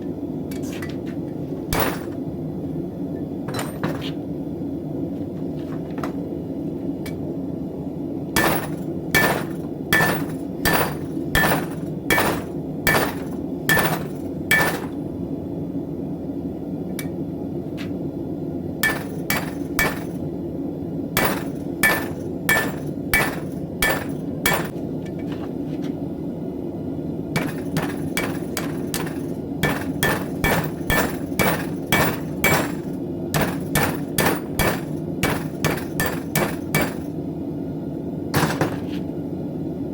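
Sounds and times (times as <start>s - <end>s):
hammer striking steel on anvil: 1.7s - 2.2s, 8.4s - 15.0s, 18.8s - 20.2s, 21.2s - 24.8s, 27.4s - 37.1s.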